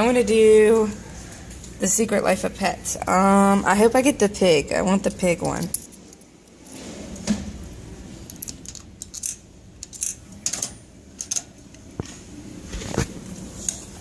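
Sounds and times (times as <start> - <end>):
coins rattling: 5.1 - 6.6, 8.3 - 11.5
vending machine coin mechanism clicks: 8.3 - 11.5.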